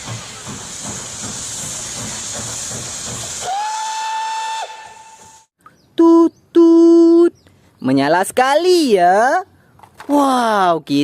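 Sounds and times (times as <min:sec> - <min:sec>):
steam hissing: 0:00.0 - 0:05.5
steam locomotive chuffing: 0:00.0 - 0:05.5
steam whistle blast: 0:03.4 - 0:05.5.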